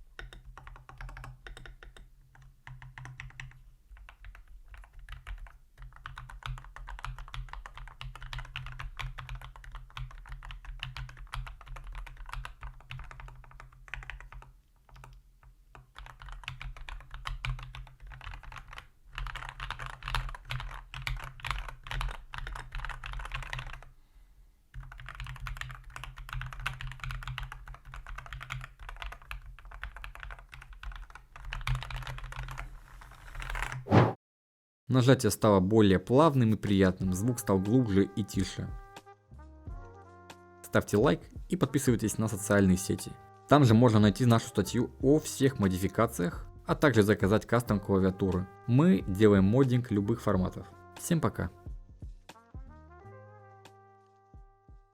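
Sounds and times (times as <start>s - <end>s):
mechanical keyboard typing: 0.1s - 23.9s, 24.7s - 33.8s.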